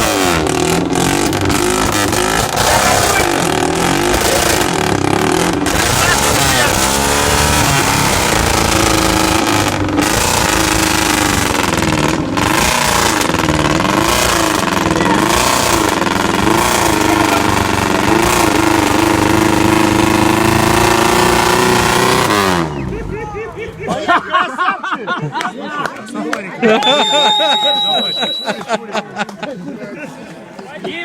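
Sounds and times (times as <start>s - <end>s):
vehicle engine revving hard: 0.0s - 23.4s.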